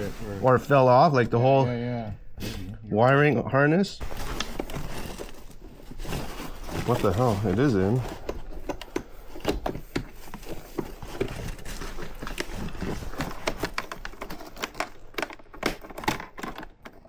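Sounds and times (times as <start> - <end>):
small parts being handled: 4.0 - 17.0
hands clicking and tapping on plastic: 8.2 - 11.5, 12.3 - 17.0.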